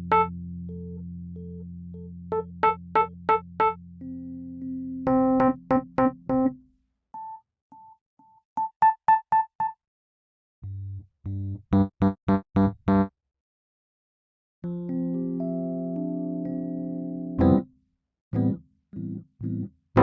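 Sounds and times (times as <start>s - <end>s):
electric piano chords: 0.0s - 6.6s, 14.6s - 17.6s, 18.4s - 20.0s.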